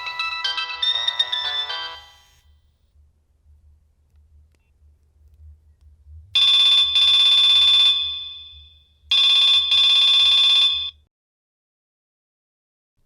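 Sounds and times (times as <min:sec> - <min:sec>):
buzzy phone ringtone: 0:00.0 - 0:02.4, 0:08.0 - 0:08.8.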